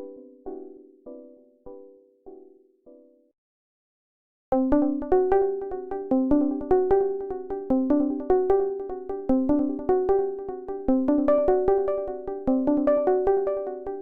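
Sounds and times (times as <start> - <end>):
synth keyboard melody: 4.6 - 14.0.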